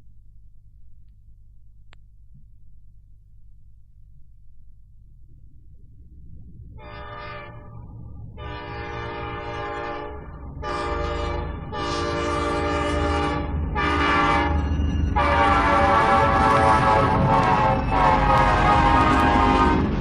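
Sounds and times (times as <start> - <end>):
train rumble: 4.1 - 20.0
locomotive air horn blasts: 6.8 - 20.0.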